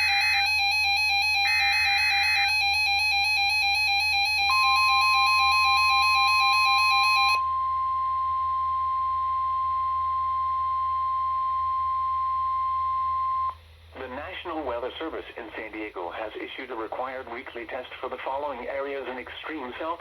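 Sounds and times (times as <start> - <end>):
pulsing buzzy electronic alarm: 0.0 - 13.6
steady warning tone: 0.0 - 19.8.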